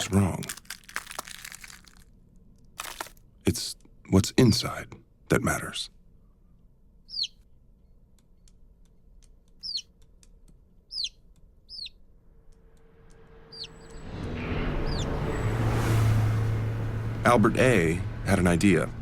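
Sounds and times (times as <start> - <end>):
small bird chirping: 7.0 - 8.6, 9.2 - 15.4
low hum: 10.0 - 19.0
rushing noise: 12.6 - 19.0.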